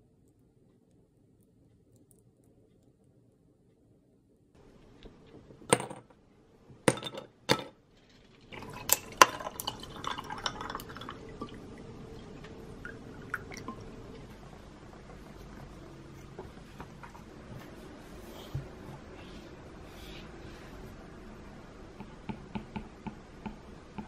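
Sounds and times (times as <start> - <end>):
steady faint hiss: 0.0 - 24.0
glass and dishes clinking: 8.5 - 11.6
liquid being poured: 8.5 - 17.2.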